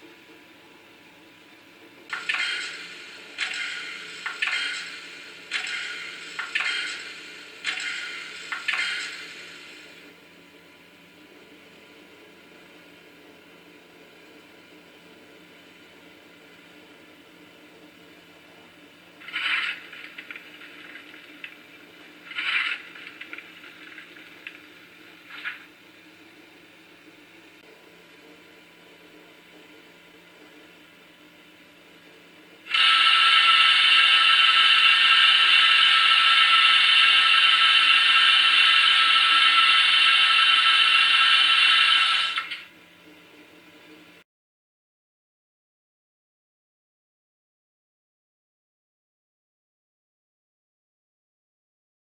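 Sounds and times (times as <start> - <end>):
faint steady hum: 0.0 - 44.2
model locomotive steam hisses: 32.7 - 42.6.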